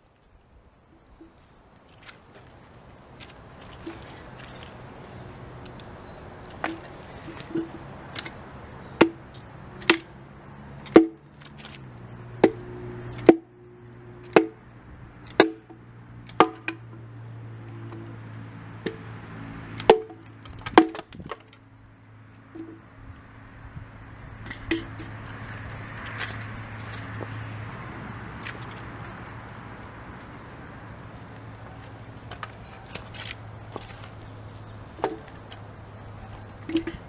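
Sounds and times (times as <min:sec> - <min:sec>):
hatchet chopping wood: 0:09.0 - 0:10.1, 0:10.8 - 0:11.8, 0:12.4 - 0:13.5, 0:14.3 - 0:14.6, 0:15.3 - 0:16.8, 0:19.8 - 0:21.5.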